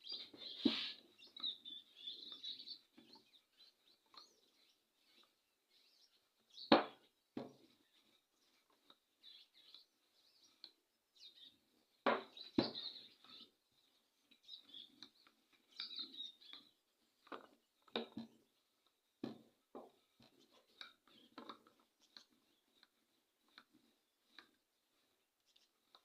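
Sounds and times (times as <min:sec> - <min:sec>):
faint birds chirping: 0:00.0 - 0:26.0.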